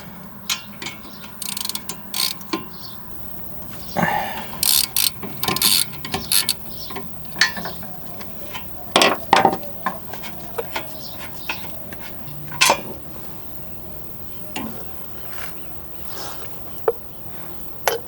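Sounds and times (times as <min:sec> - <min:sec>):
socket ratchet clicking: 0:00.5 - 0:09.3.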